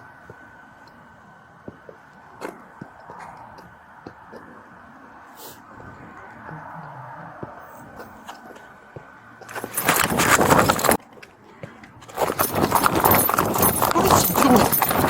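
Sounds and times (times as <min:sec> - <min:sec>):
gear and clothing rustling: 0:08.0 - 0:15.0.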